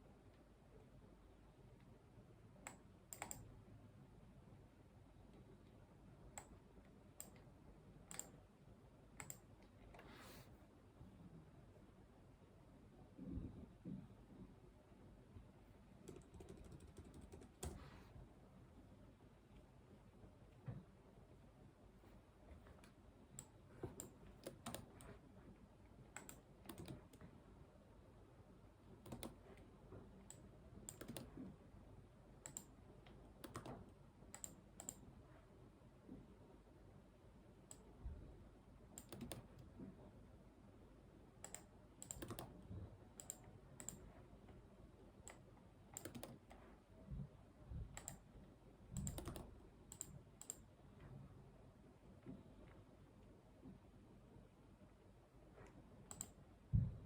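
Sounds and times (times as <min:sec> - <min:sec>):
computer keyboard typing: 0:02.7 - 0:03.5, 0:08.1 - 0:08.4, 0:16.0 - 0:17.8, 0:22.8 - 0:25.1, 0:26.2 - 0:27.2, 0:29.0 - 0:29.4, 0:30.3 - 0:31.3, 0:32.4 - 0:32.7, 0:33.4 - 0:35.0, 0:39.0 - 0:39.5, 0:41.4 - 0:42.6, 0:45.3 - 0:46.6, 0:48.0 - 0:48.2, 0:49.0 - 0:50.6.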